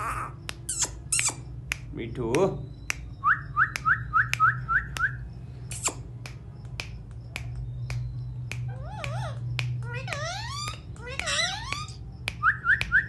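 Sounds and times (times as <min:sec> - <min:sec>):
parrot chirping and whistling: 0:00.7 - 0:01.6, 0:08.6 - 0:13.0.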